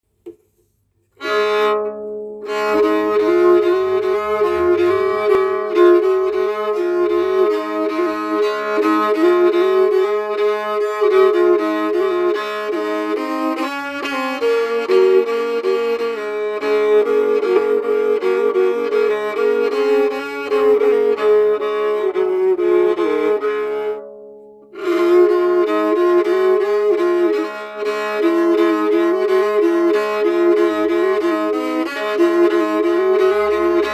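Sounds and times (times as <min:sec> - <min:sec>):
bowed lyre melody over drone: 0:01.3 - 0:12.5, 0:30.4 - 0:33.9.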